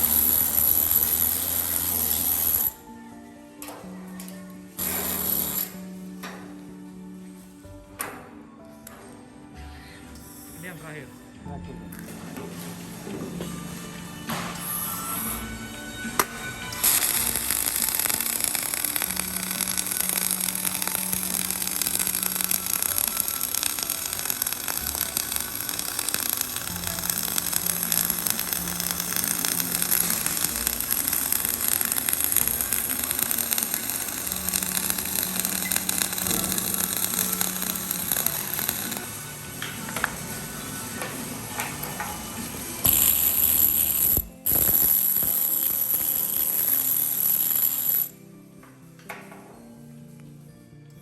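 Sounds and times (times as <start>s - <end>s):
electric arc welding hiss: 0.0s - 2.8s, 4.8s - 6.0s, 14.4s - 48.2s.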